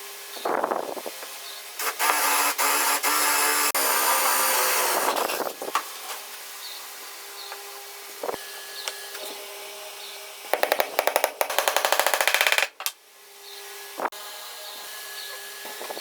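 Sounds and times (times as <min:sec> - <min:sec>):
workshop hum: 0:00.0 - 0:16.0.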